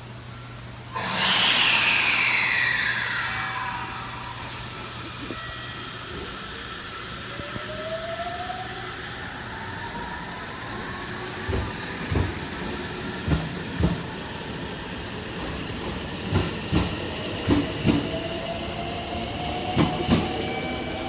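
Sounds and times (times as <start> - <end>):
train rumbling on rails: 0.9 - 21.0
thin rising tone: 1.0 - 11.0.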